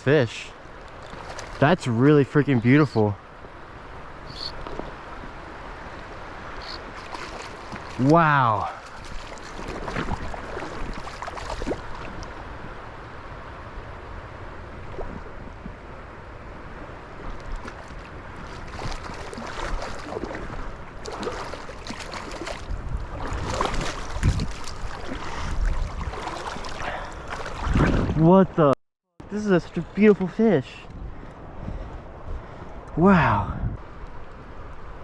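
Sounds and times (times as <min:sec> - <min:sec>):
wind rumbling on microphone: 0:00.0 - 0:28.6, 0:29.7 - 0:35.0
river water flowing: 0:00.0 - 0:35.0.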